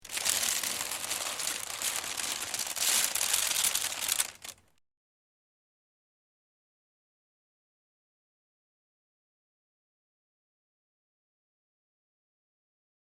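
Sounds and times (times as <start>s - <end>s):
wicker crackling and crunching: 0.0s - 4.7s.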